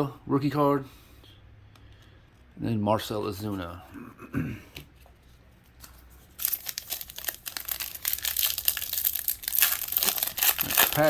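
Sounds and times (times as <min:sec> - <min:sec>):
plastic wrapper crinkling and tearing: 0:06.3 - 0:11.0.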